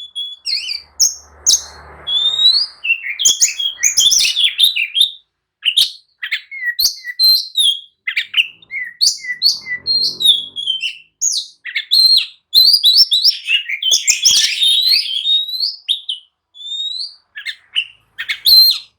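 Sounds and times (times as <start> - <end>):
bird singing fast whistles: 0.0 - 18.9.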